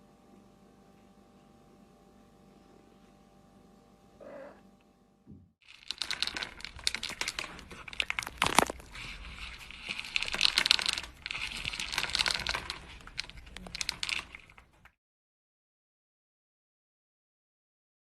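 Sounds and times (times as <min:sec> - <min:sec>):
crinkling and crackling: 0:05.6 - 0:15.0.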